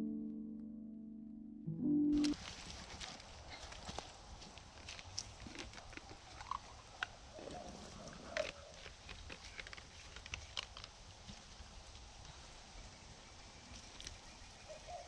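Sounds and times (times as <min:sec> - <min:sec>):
small clicks and crunches: 0:02.2 - 0:12.1.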